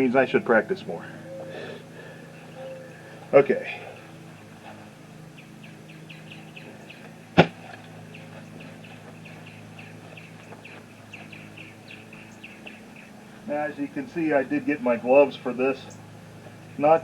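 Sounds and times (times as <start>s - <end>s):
small bird chirping: 5.4s - 13.2s
sharp knock: 7.4s - 7.6s.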